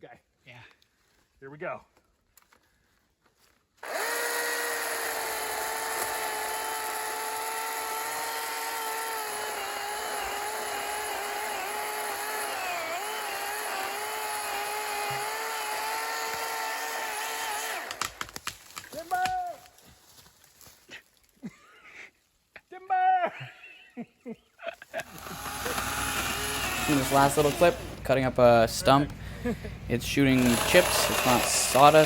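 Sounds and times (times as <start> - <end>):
electric chainsaw cutting wood: 3.8 - 18.5, 25.0 - 28.0, 30.2 - 32.0.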